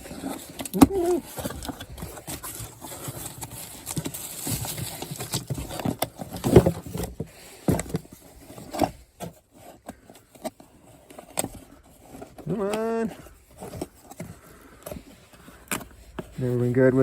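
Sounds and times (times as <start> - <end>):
cardboard box being opened: 0.0 - 17.0.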